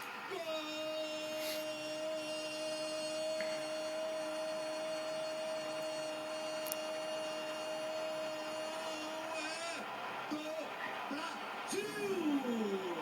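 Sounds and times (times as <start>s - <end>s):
steady electronic hum: 0.9s - 10.0s.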